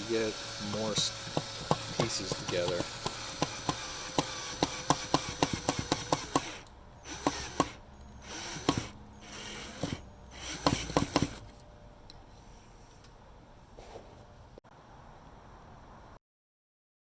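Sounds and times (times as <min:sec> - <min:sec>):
power driver running: 0:00.0 - 0:11.7
sharp clicks of power driver: 0:00.7 - 0:07.8.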